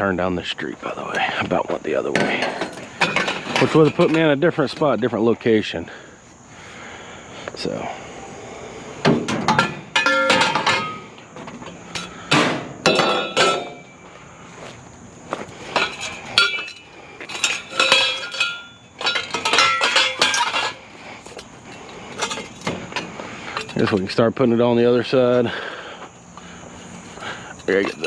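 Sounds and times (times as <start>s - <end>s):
metal parts clanking onto scrap pile: 2.1s - 4.4s, 9.2s - 11.1s, 12.0s - 13.8s, 15.7s - 24.2s, 27.6s - 28.0s.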